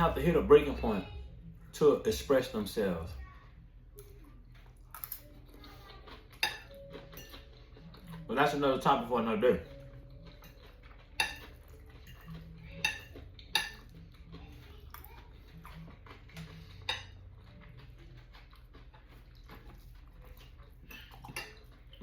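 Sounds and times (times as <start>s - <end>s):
fork clinking on a plate: 6.4s - 7.6s, 10.2s - 14.0s, 20.9s - 21.8s.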